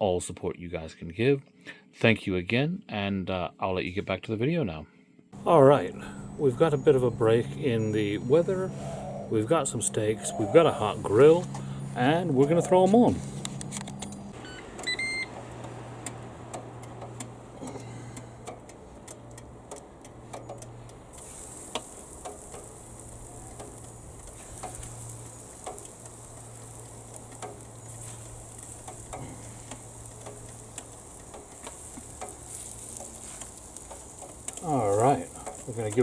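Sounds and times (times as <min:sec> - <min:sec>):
low hum: 0:05.4 - 0:35.8
meat sizzling on a grill: 0:15.2 - 0:36.0.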